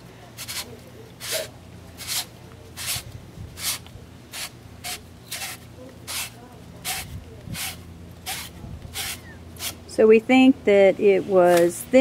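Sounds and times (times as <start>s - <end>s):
scrubbing copper pipe: 0.0s - 9.8s.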